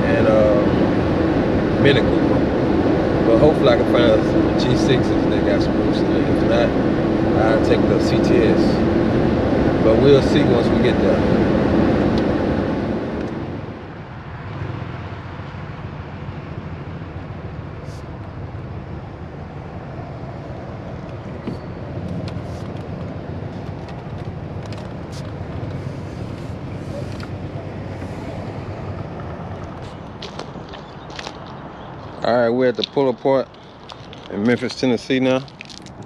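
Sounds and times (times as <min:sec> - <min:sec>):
car engine hum: 0:00.0 - 0:36.0
road and tyre noise: 0:00.0 - 0:36.0.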